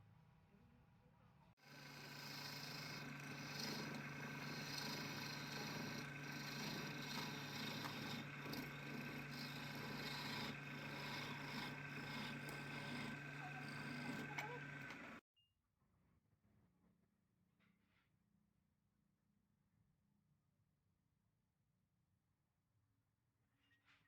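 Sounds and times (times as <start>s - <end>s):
lathe motor humming: 1.6s - 15.2s
rough scraping noise: 1.8s - 15.2s.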